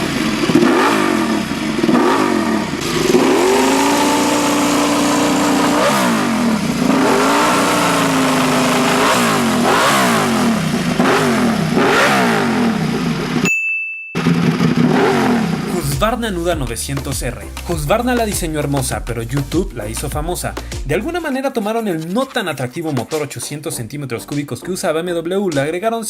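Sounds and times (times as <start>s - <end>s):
motorcycle engine revving: 0.0s - 13.5s, 14.2s - 16.8s.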